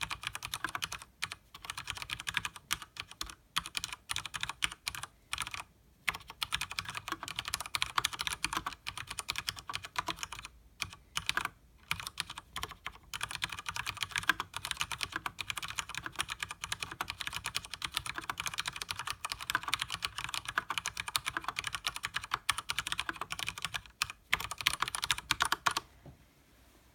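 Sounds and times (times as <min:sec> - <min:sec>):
fast typing on mechanical keyboard: 0:00.0 - 0:25.8.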